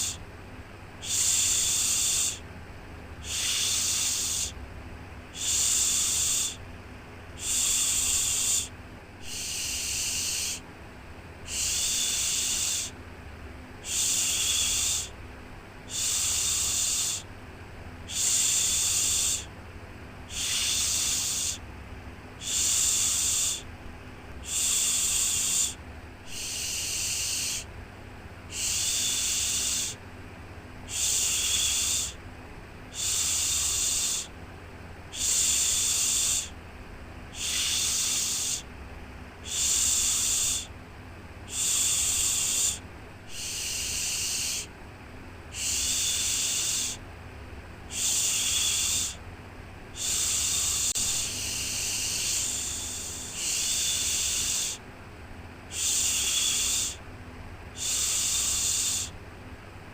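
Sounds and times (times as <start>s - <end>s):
person shushing: 3.2s - 4.6s, 7.4s - 10.6s, 11.5s - 13.0s, 13.8s - 15.1s, 20.3s - 21.6s, 24.4s - 27.7s, 28.5s - 30.0s, 30.9s - 32.2s, 37.4s - 38.7s, 41.5s - 44.7s, 45.5s - 47.0s, 47.9s - 49.2s, 50.0s - 54.8s, 55.7s - 57.0s.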